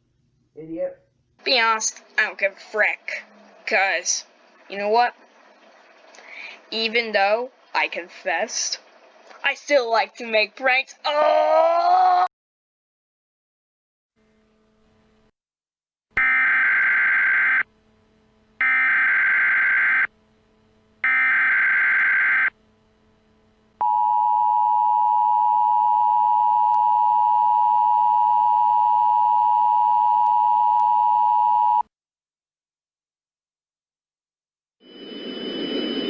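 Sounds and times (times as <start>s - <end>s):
data burst tones: 16.2s - 17.6s, 18.6s - 20.1s, 21.0s - 22.5s
two-tone attention signal: 16.2s - 17.7s, 18.6s - 20.1s, 21.0s - 22.5s.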